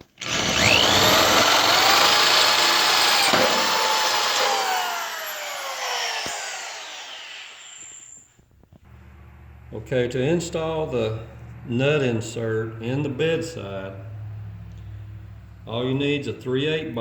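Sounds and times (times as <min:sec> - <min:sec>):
power drill drilling through steel: 0:00.0 - 0:08.2.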